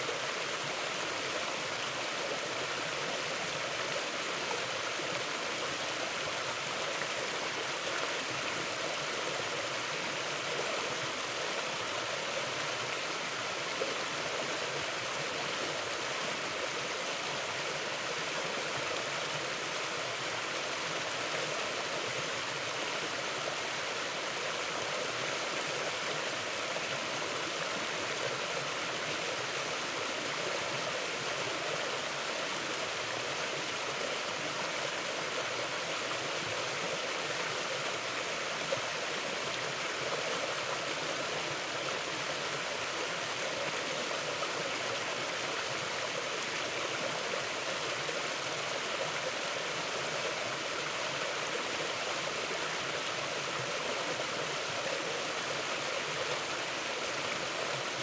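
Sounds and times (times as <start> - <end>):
river flowing over rocks: 0.0 - 58.0.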